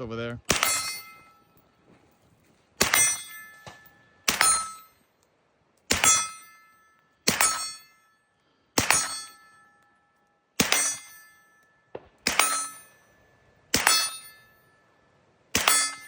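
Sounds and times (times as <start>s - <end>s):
metallic ring: 0.6s - 1.8s, 2.8s - 5.1s, 6.0s - 16.0s
suppressed gunshots: 11.9s - 12.8s.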